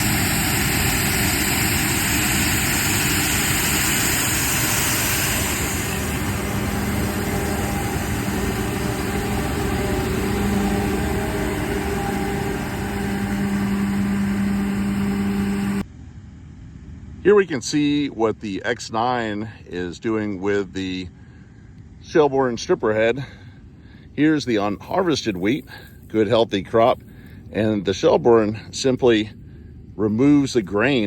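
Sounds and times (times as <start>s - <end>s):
loud rushing hiss: 0.0s - 15.8s
low engine hum: 0.0s - 17.2s.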